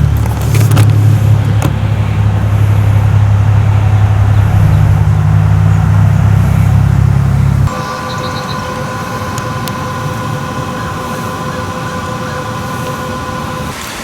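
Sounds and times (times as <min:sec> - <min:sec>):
loud steady low hum: 0:00.0 - 0:14.0.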